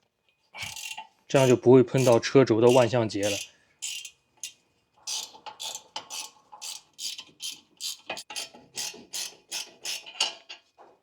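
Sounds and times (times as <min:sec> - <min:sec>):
ratcheting spanner clicking: 0:00.6 - 0:08.5.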